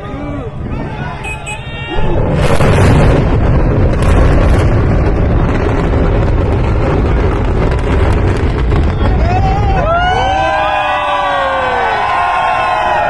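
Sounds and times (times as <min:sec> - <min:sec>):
buildings collapsing rumble: 0:00.0 - 0:13.0
explosive charges crackling: 0:00.6 - 0:10.9.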